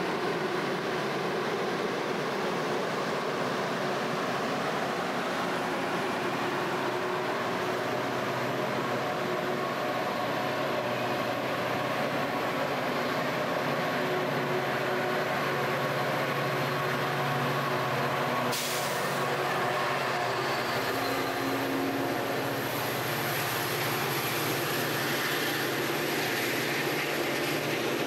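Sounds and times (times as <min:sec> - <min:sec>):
diesel train engine drone: 0:00.0 - 0:28.0
short sharp air hiss: 0:18.5 - 0:19.3.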